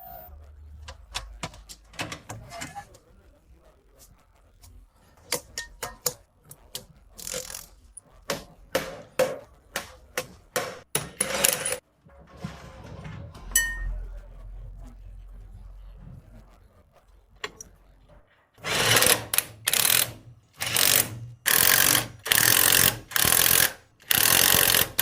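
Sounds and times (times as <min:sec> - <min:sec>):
metallic clicks and knocks: 0:00.8 - 0:02.8
steady low hum: 0:12.1 - 0:18.3
ringing metallic ping: 0:13.5 - 0:14.0.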